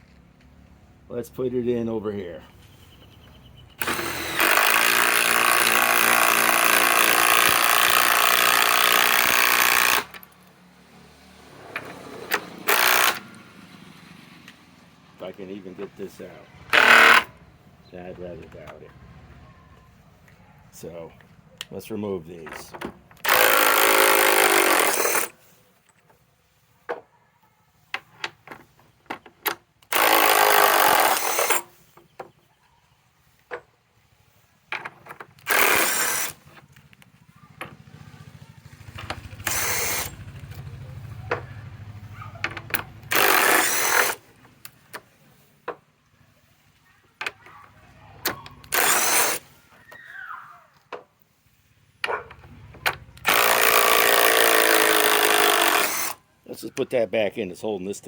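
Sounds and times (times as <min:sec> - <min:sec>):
impact driver removing screws: 0:03.8 - 0:10.4, 0:11.7 - 0:13.3, 0:16.7 - 0:17.3, 0:22.5 - 0:25.4, 0:28.0 - 0:31.7, 0:34.8 - 0:36.8, 0:39.0 - 0:40.2, 0:42.4 - 0:45.1, 0:48.2 - 0:49.5, 0:52.0 - 0:56.2.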